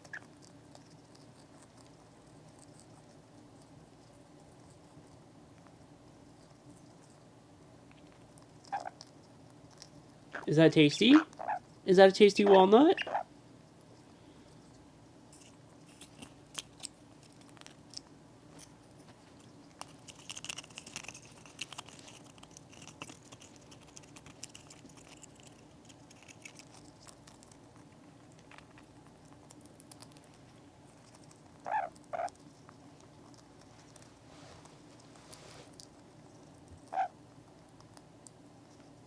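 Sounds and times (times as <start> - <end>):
parrot chirps: 8.7 - 9.0, 11.1 - 11.6, 12.4 - 13.3, 31.6 - 32.3, 36.9 - 37.1
parrot cracking a nut with its beak: 19.7 - 27.6.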